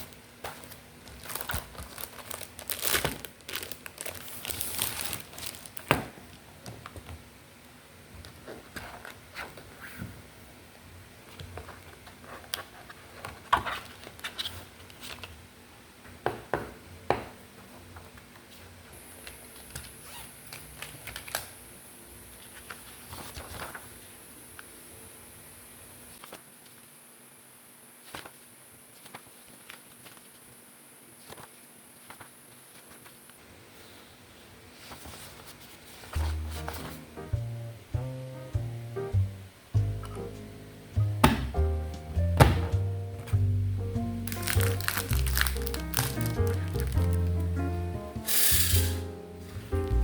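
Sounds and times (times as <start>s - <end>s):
packaging ripping: 0.0s - 6.0s, 44.3s - 47.6s
packaging crinkling: 0.0s - 6.1s, 44.2s - 47.6s.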